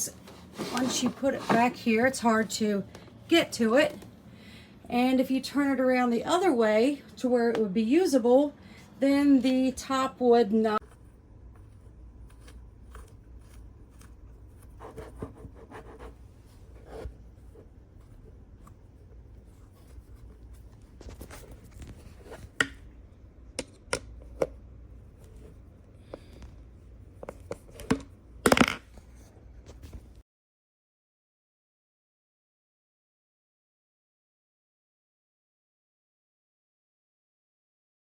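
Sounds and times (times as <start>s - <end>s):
table scraping: 0.0s - 2.0s
table clattering: 27.9s - 28.9s.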